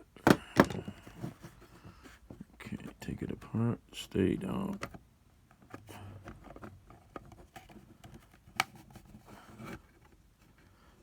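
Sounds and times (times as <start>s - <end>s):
plastic case clicks and scrapes: 0.2s - 1.6s, 4.6s - 10.2s.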